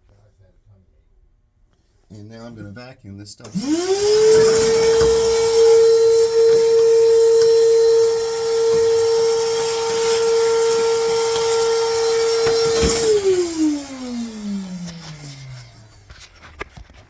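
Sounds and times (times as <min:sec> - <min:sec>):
vacuum cleaner whining: 0:03.4 - 0:17.0.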